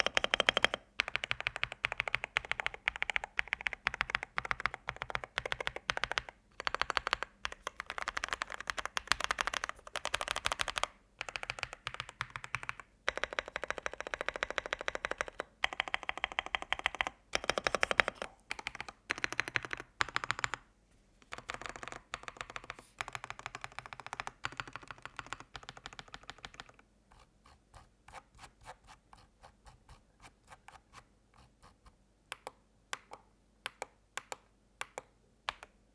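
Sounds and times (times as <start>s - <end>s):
mechanical keyboard typing: 0.0s - 20.6s, 21.3s - 26.8s.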